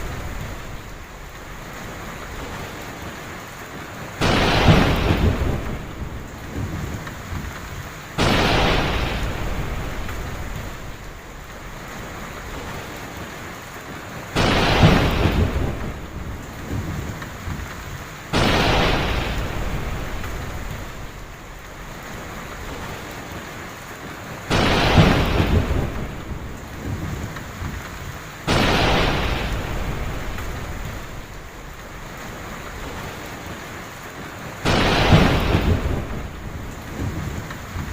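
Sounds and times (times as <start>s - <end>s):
heavy rain falling: 0.0s - 37.9s
thunder claps rumbling: 4.2s - 13.3s, 14.3s - 23.4s, 24.2s - 33.6s, 34.6s - 37.9s.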